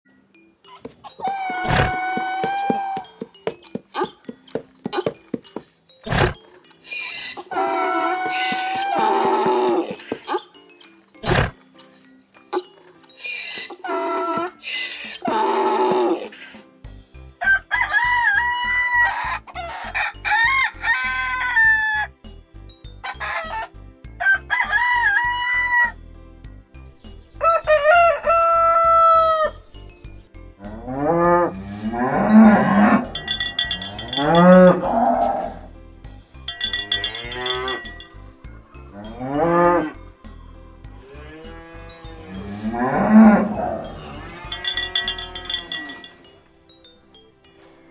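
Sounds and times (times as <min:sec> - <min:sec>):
rooster crowing: 0:17.4 - 0:22.1, 0:27.4 - 0:29.5
cow mooing: 0:30.8 - 0:35.7, 0:36.9 - 0:38.1, 0:39.0 - 0:40.0, 0:41.0 - 0:46.2.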